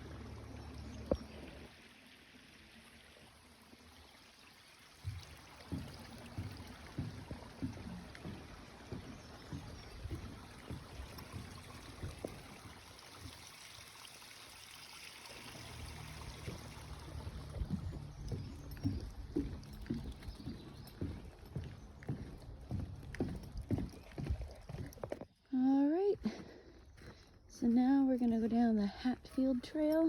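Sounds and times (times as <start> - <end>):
footsteps on forest trail: 5.0 - 13.6, 15.8 - 30.0.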